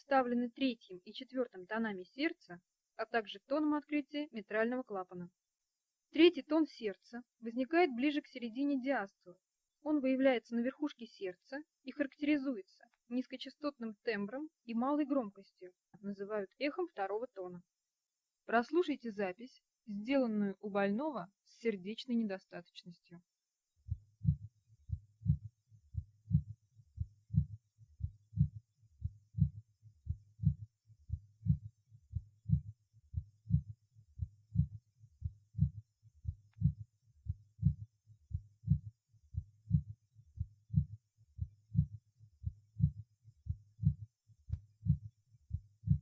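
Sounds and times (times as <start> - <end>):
heartbeat through stethoscope: 23.8 - 46.0.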